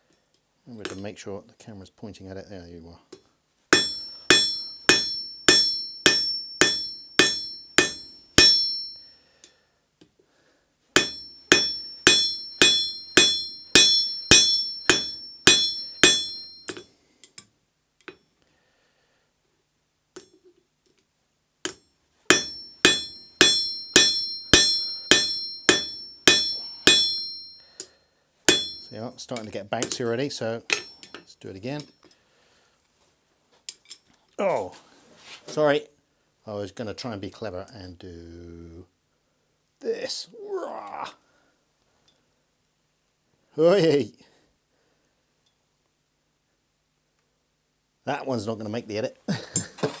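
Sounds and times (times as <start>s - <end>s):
hammer striking hot steel: 3.7s - 9.1s, 11.0s - 16.8s, 22.3s - 27.6s, 28.5s - 29.0s.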